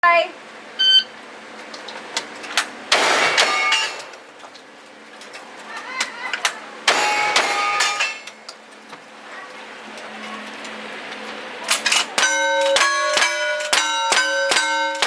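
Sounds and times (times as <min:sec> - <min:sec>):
steel plate ringing: 0:03.0 - 0:04.1, 0:06.9 - 0:08.4, 0:11.9 - 0:15.0.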